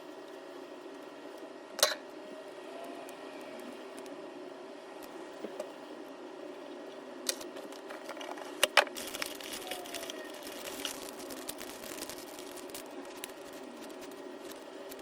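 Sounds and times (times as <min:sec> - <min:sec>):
steady background hum: 0:00.0 - 0:15.0
paper crackling and rustling: 0:07.3 - 0:15.0.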